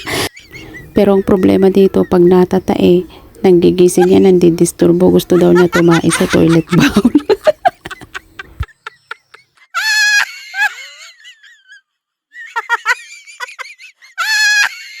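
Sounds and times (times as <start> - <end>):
chicken squawking: 3.9 - 4.4.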